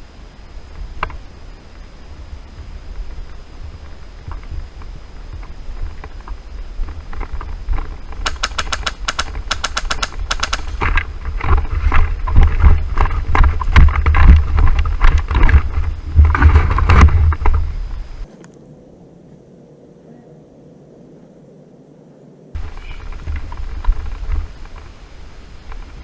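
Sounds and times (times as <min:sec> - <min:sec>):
wind rumble on microphone: 0:00.0 - 0:26.0
airsoft gun shots: 0:08.2 - 0:10.9.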